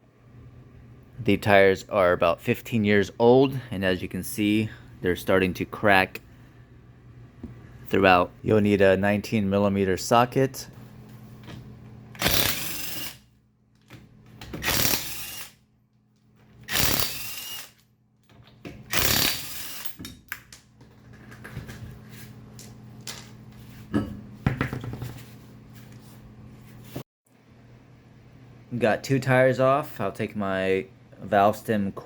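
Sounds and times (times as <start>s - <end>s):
impact wrench bursts: 12.2s - 13.2s, 14.6s - 15.6s, 16.6s - 17.8s, 18.9s - 20.0s.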